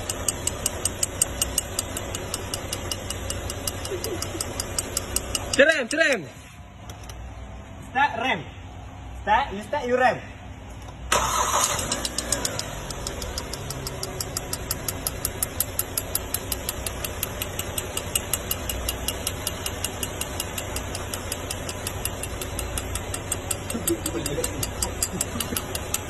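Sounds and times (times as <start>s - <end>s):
engine knocking: 0.0s - 5.6s, 12.0s - 26.0s
car engine rumbling: 0.0s - 7.8s, 10.5s - 26.0s.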